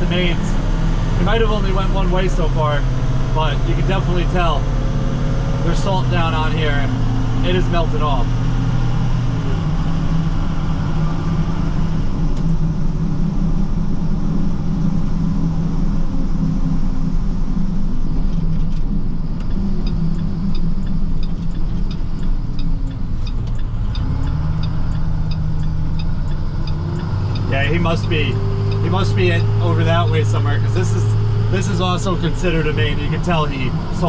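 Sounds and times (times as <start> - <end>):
truck engine and road drone: 0.0 - 34.0
light ticking: 18.3 - 34.0.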